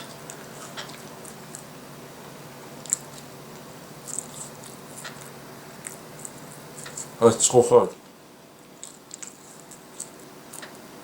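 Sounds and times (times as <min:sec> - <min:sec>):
person chewing crispy fries: 0:02.8 - 0:03.3, 0:04.0 - 0:07.2.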